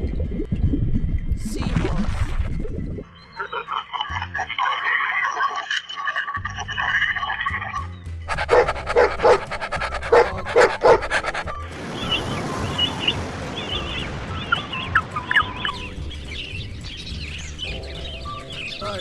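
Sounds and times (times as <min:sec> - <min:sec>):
birds chirping: 0:03.0 - 0:19.0
dog panting with short yelps: 0:08.3 - 0:11.7.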